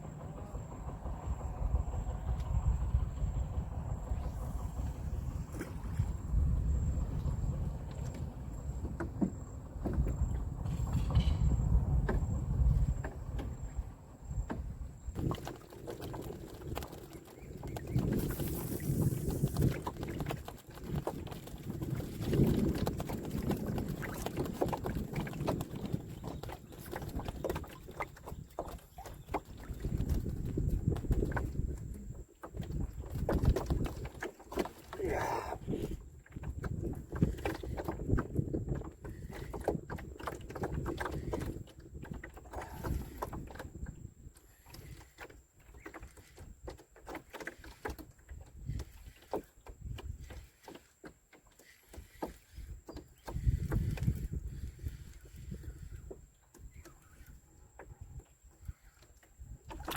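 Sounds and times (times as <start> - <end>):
low rumble: 0.0 - 15.1
knocks and clicks on a boat: 0.0 - 59.9
low rumble of wind and water: 0.0 - 59.9.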